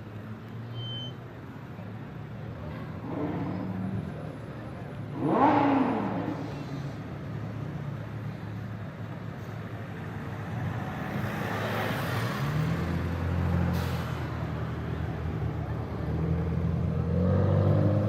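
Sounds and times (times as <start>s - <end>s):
loud car engine revving: 3.0s - 4.2s, 5.1s - 7.0s, 16.1s - 18.0s.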